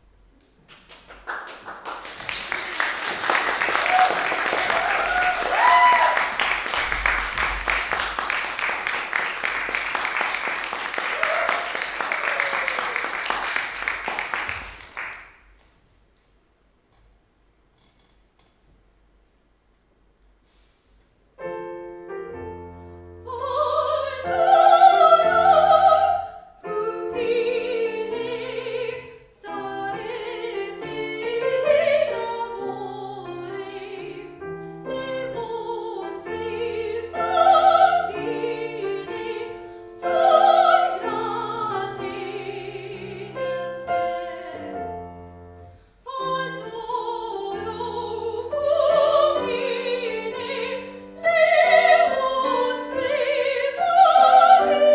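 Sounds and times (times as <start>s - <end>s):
piano accompaniment: 21.4s - 54.9s.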